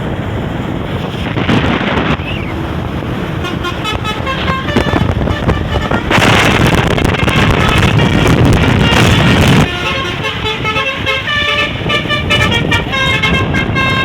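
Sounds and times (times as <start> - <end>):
bus engine running: 0.0 - 14.0
loud rush of noise: 0.0 - 14.0
musical air horn tune: 3.4 - 14.0.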